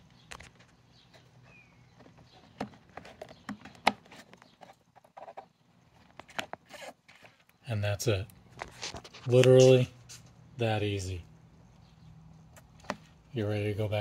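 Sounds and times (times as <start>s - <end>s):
plastic parts clicking and knocking: 1.9s - 7.6s.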